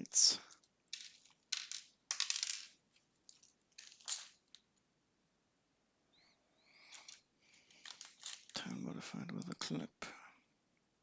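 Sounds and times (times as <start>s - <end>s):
plastic pieces clicking: 0.5s - 4.8s, 6.8s - 8.7s.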